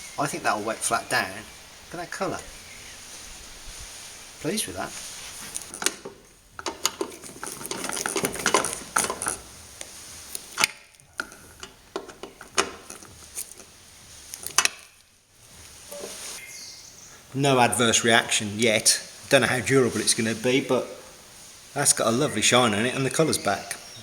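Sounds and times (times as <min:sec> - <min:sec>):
small hard objects clinking: 0:05.5 - 0:09.6.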